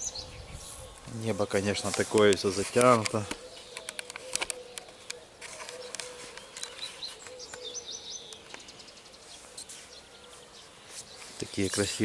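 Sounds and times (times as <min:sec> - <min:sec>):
birds singing and chirping: 0:00.0 - 0:12.0
sharp clicks: 0:01.8 - 0:07.7.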